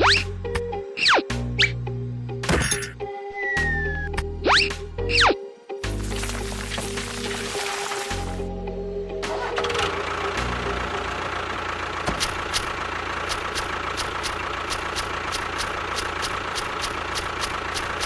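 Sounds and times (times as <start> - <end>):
regular clicking: 12.1 - 18.0.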